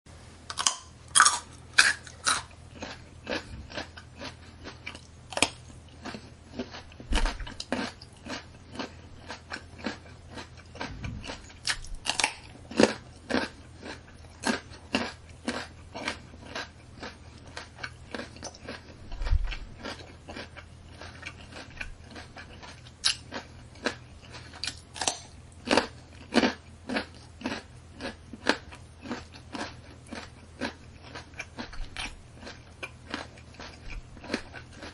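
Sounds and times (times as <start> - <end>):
faint low hum: 0.1 - 34.9
carrot crunching: 0.5 - 34.9.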